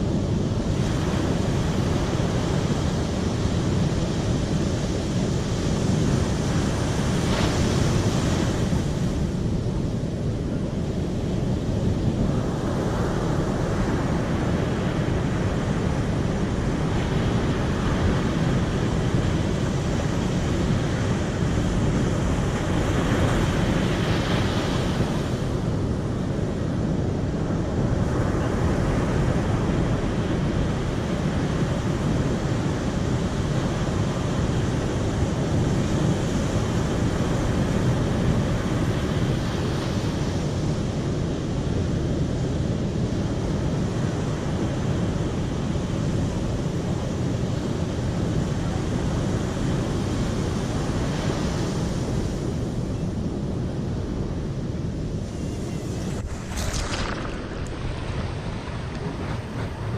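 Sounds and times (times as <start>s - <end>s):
flowing water rushing: 55.3s - 59.9s.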